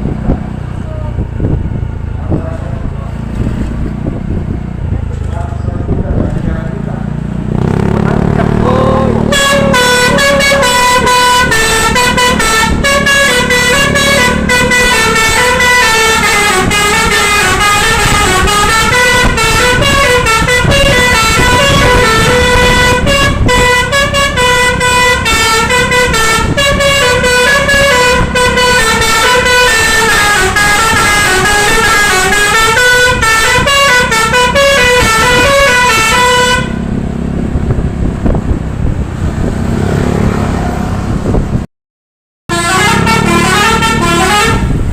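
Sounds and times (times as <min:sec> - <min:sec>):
low rumble: 0:00.0 - 0:29.7
multi-tone bus horn melody: 0:07.6 - 0:37.0, 0:42.5 - 0:44.9.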